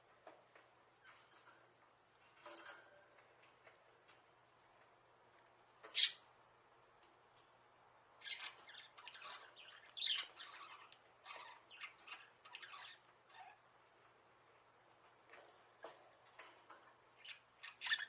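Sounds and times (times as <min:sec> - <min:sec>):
budgerigars chirping: 0:08.2 - 0:13.6, 0:17.2 - 0:18.0.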